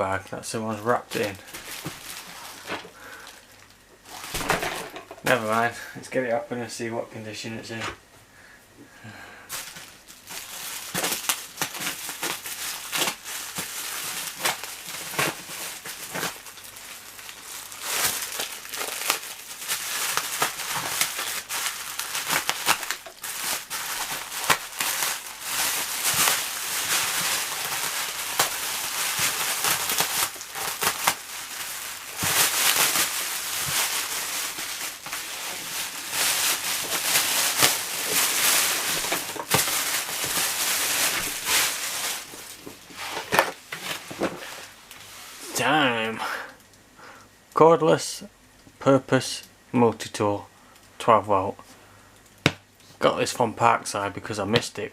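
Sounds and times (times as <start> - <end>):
plastic bag crinkling: 0.6 - 5.9, 9.5 - 46.0.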